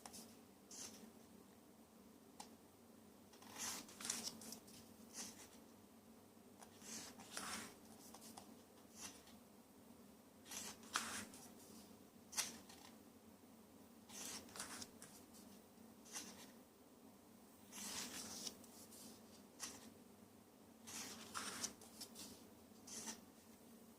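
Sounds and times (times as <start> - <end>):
faint steady hum: 0.0 - 23.9
book pages turning: 3.4 - 5.6, 6.6 - 9.4, 10.4 - 11.6, 12.3 - 13.0, 14.1 - 16.5, 17.7 - 19.9, 20.9 - 23.2.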